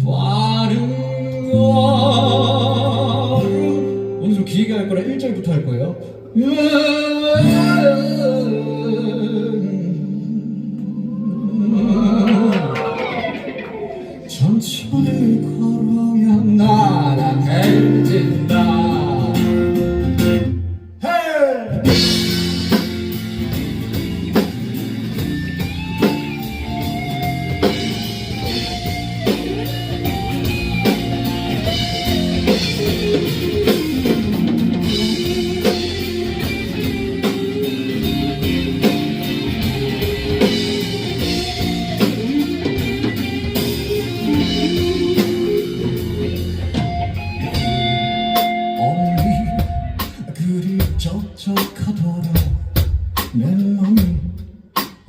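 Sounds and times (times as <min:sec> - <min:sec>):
electric guitar melody: 0:00.0 - 0:21.0, 0:21.8 - 0:51.0
drum kit: 0:07.3 - 0:08.8, 0:11.9 - 0:15.6, 0:16.5 - 0:20.7, 0:21.6 - 0:55.0.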